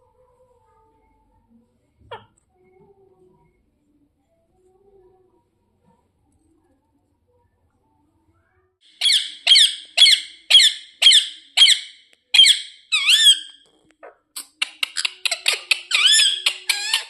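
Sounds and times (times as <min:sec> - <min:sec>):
parrot screeching: 0:08.9 - 0:13.6, 0:14.7 - 0:17.0
parrot squawk: 0:08.9 - 0:13.6, 0:14.4 - 0:17.0.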